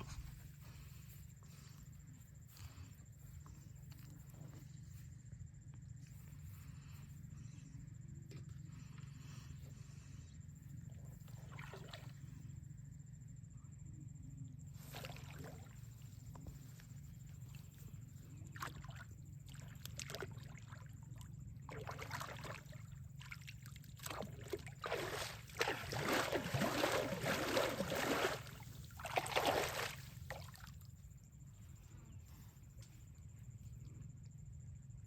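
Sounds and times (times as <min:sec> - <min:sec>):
low background hum: 0:00.0 - 0:35.0
water splashing and sloshing: 0:11.1 - 0:12.6, 0:14.7 - 0:31.0.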